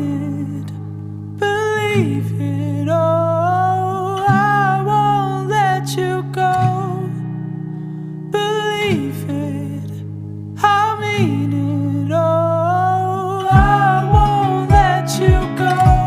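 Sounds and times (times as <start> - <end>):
pop ballad: 0.0 - 16.0
low drum beats: 13.6 - 16.0.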